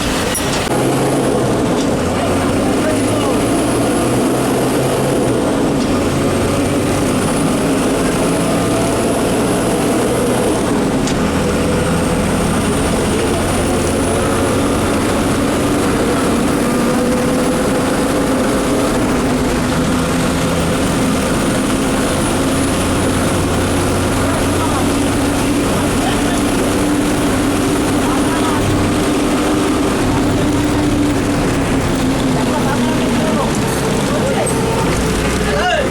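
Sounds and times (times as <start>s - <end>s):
bus diesel engine hum: 0.0s - 35.9s
road and rain noise: 0.0s - 35.9s.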